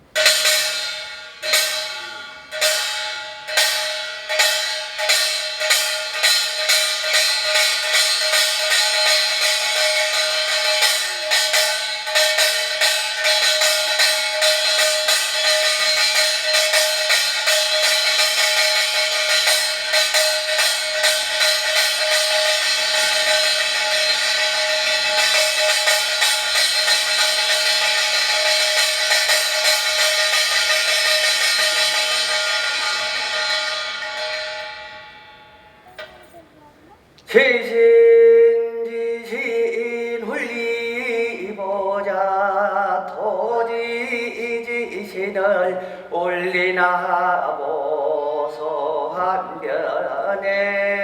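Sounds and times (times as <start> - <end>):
small brass gongs striking: 0.0 - 37.1.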